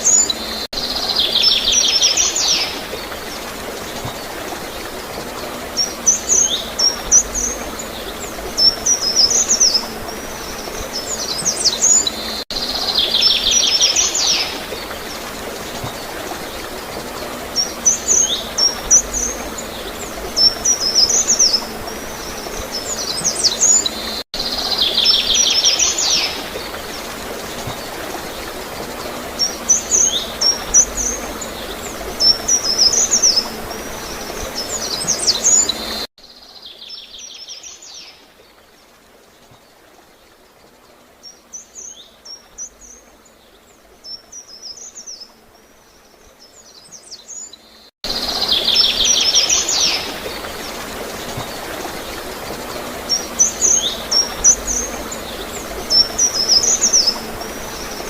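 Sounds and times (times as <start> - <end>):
water gurgling: 0.0 - 36.1, 48.1 - 58.0
songbirds chirping: 0.0 - 58.0.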